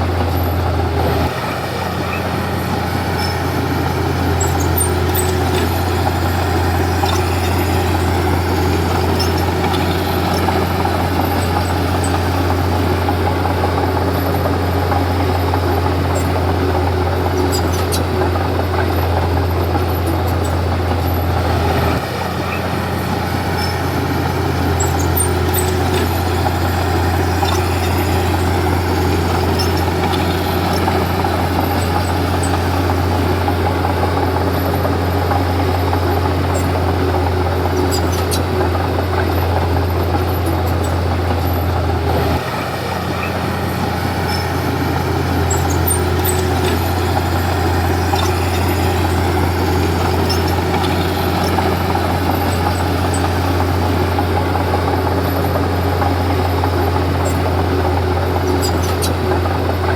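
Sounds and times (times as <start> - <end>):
bulldozer diesel engine running: 0.0 - 59.9.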